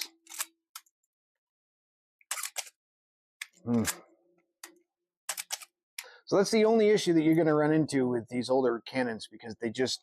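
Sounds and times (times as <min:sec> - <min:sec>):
camera shutter clicking: 0:02.3 - 0:02.8.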